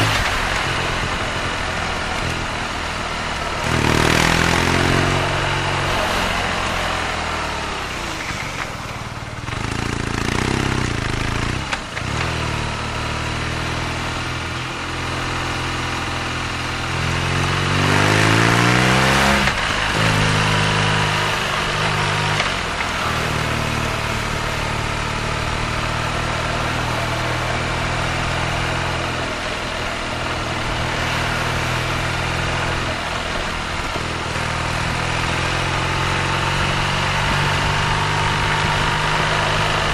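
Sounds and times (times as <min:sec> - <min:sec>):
motorcycle engine running: 0:00.0 - 0:39.9.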